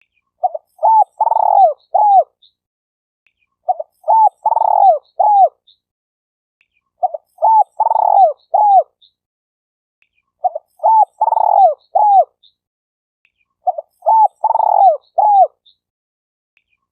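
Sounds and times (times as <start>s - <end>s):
dove cooing: 0.4s - 2.3s, 3.7s - 5.6s, 7.0s - 8.9s, 10.4s - 12.3s, 13.7s - 15.6s.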